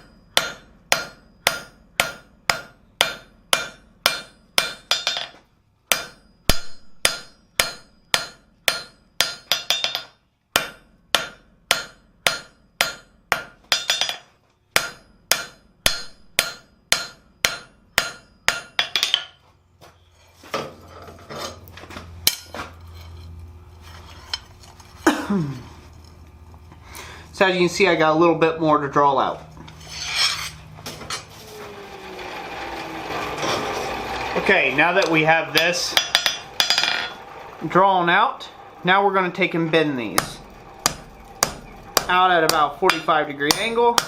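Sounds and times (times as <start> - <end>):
hammer ringing on steel: 0.0 - 14.2, 14.8 - 19.4, 40.2 - 44.0
low steady hum: 0.0 - 44.0.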